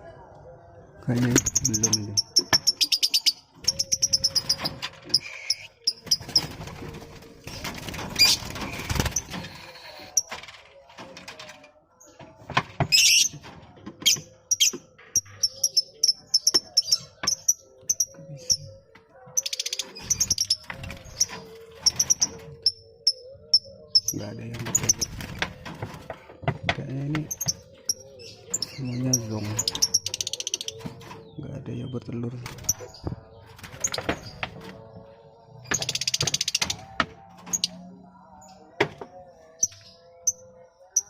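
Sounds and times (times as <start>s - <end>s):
lovebirds chattering: 1.1s - 6.5s, 26.5s - 35.0s.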